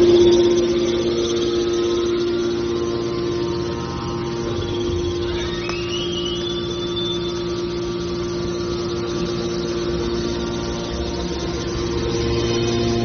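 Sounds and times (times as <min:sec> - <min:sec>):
car baler humming: 0:00.0 - 0:13.0
short rising squeal: 0:00.3 - 0:08.0.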